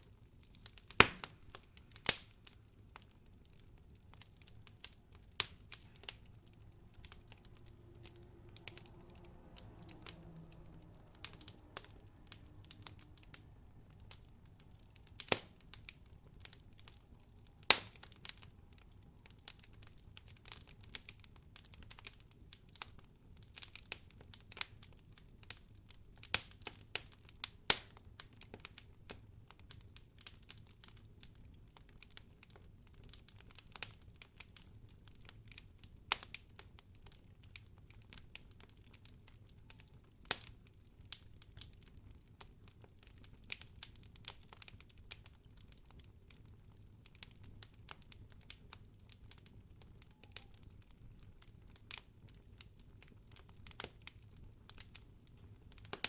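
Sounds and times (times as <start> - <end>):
campfire crackling and popping: 0.0 - 56.0.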